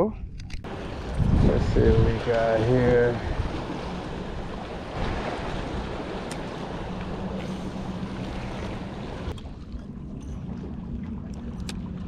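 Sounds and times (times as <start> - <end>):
steady low hum: 0.1 - 12.0
wind buffeting microphone: 0.2 - 9.4.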